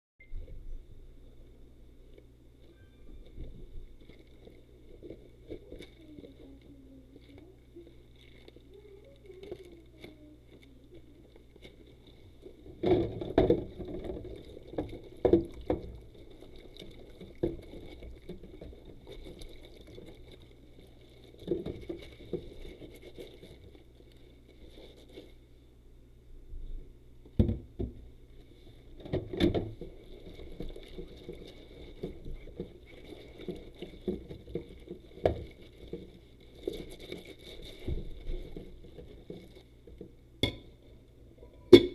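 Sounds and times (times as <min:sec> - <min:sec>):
rubber gloves squeaking and scraping: 0:02.6 - 0:06.2.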